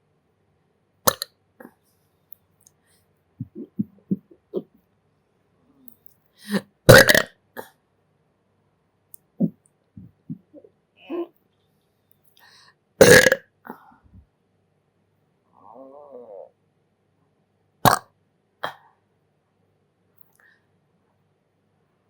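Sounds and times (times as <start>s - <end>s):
person belching: 6.9s - 7.3s, 13.0s - 13.4s.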